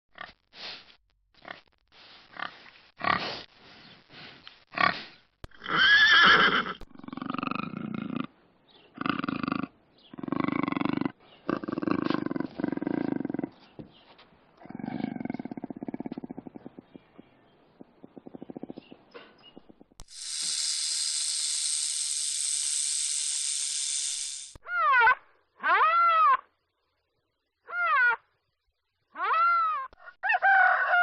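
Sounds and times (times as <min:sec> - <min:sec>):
pony whinnying: 0:05.6 - 0:06.8
pigs grunting: 0:14.6 - 0:17.1.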